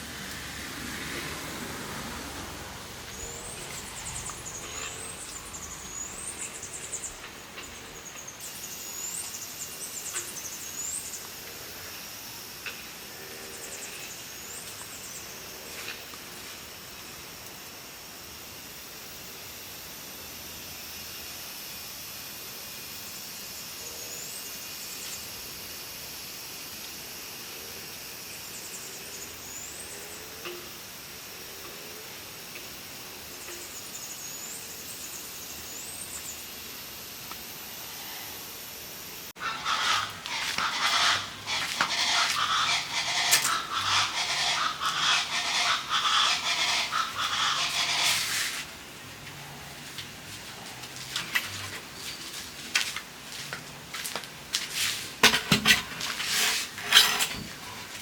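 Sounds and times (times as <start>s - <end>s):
outdoor background hiss: 0.0s - 58.0s
birds singing: 2.8s - 11.4s, 39.4s - 48.4s.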